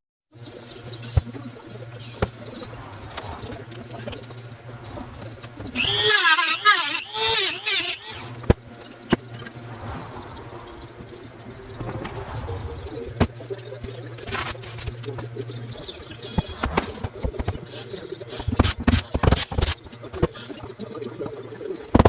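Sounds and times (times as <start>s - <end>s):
power drill squealing: 5.8s - 8.4s.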